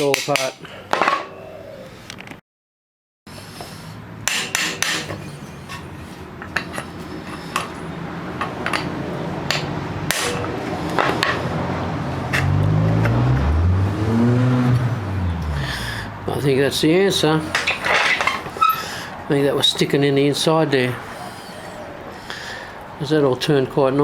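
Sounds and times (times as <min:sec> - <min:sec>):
hammer striking metal: 0:04.2 - 0:05.8, 0:09.5 - 0:11.4
low wavering hum: 0:09.0 - 0:16.3.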